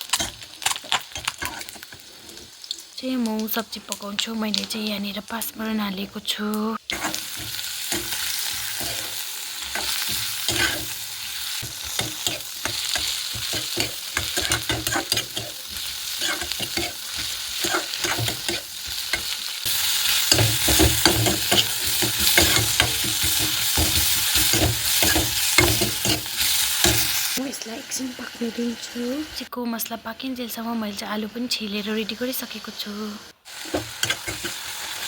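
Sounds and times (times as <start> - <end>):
utensil stirring and scraping pan: 0.0 - 2.6, 6.8 - 27.4, 33.5 - 35.0
vegetables sizzling in hot oil: 0.0 - 35.0.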